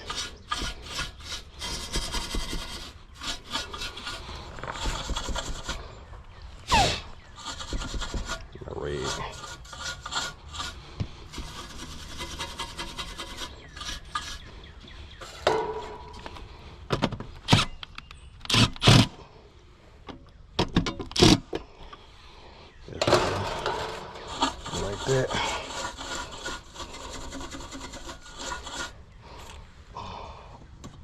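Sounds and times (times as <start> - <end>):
knocks and clatters: 23.0 - 24.8.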